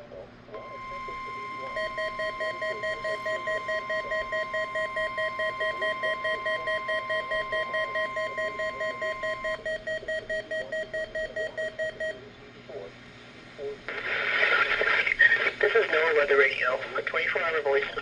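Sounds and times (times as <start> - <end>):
steady warning alarm tone: 0.5 - 12.2
buzzer beeping: 0.6 - 12.2.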